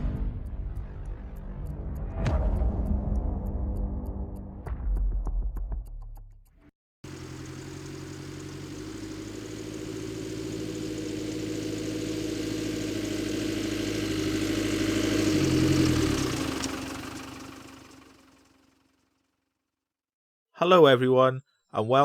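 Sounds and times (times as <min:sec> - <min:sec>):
engine-like running sound: 0:00.0 - 0:04.7, 0:07.0 - 0:19.3.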